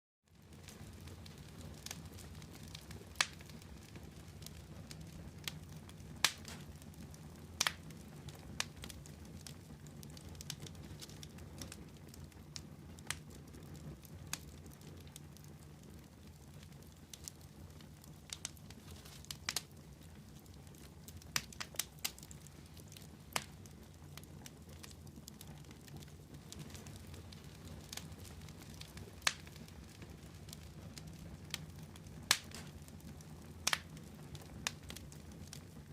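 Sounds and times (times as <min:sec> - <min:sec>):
campfire logs crackling: 0:00.4 - 0:35.9.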